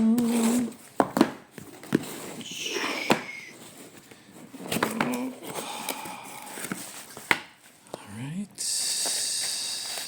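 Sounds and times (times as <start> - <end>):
cardboard clicks and scraping: 0.2 - 5.6.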